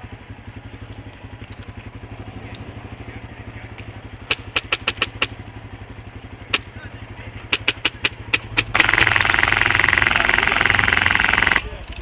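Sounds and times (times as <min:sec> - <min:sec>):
atv engine idling: 0:00.0 - 0:12.0
sharp airsoft gun shots: 0:07.6 - 0:11.7.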